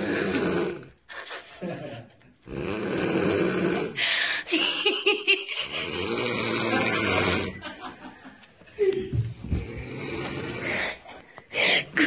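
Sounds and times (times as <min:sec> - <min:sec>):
woman snoring loudly: 0:00.0 - 0:01.0, 0:02.5 - 0:04.1, 0:05.6 - 0:07.6, 0:09.6 - 0:11.0.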